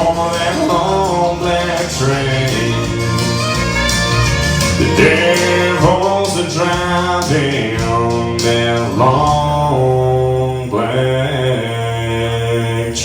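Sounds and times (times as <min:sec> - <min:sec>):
country bluegrass music: 0:00.0 - 0:13.0
guitar: 0:00.0 - 0:13.0
fiddle: 0:01.7 - 0:06.0
voice holding wordless notes: 0:04.7 - 0:13.0.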